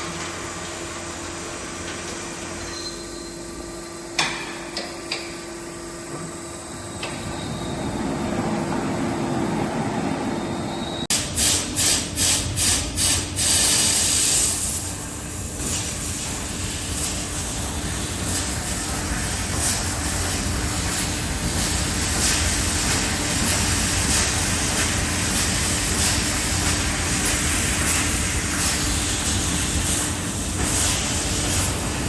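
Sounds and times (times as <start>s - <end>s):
industrial machinery humming: 0.0s - 13.4s
air hiss blasts: 11.1s - 18.8s.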